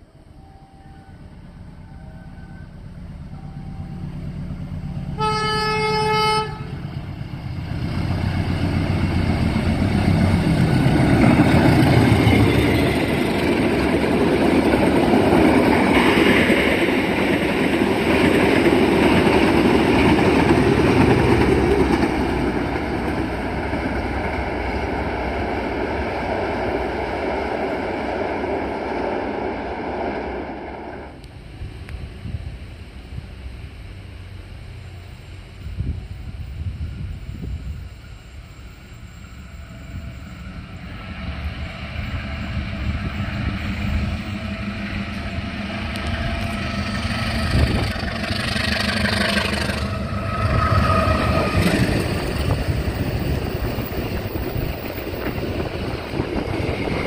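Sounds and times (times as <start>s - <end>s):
train passing with engine and wheels: 0.0s - 57.0s
raspy locomotive air horn blast: 4.9s - 6.9s.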